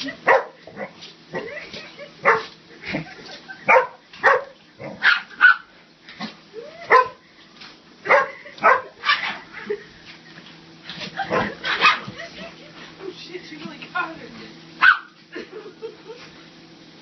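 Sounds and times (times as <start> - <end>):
dogs barking playfully: 0.0 - 7.2, 8.0 - 9.8, 10.9 - 12.5, 14.8 - 15.2.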